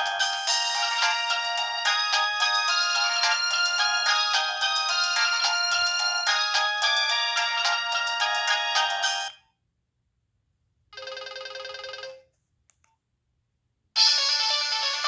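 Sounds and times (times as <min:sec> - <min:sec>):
phone ringtone melody: 0:00.0 - 0:09.3.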